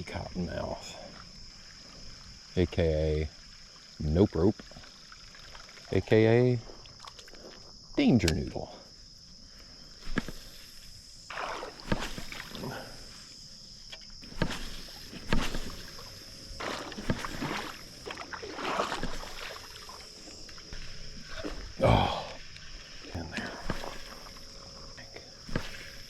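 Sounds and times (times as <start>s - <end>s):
creek water sloshing: 3.3s - 7.8s, 9.3s - 26.0s
sharp knocks on rocks: 11.8s - 12.5s, 14.2s - 16.0s, 16.6s - 17.7s, 25.4s - 26.0s.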